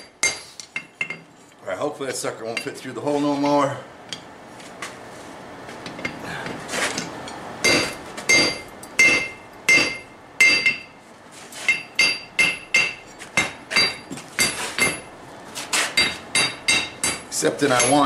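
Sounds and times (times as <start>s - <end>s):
hammer striking steel on anvil: 0.0s - 1.2s, 7.6s - 10.9s, 11.7s - 15.1s, 16.0s - 18.0s.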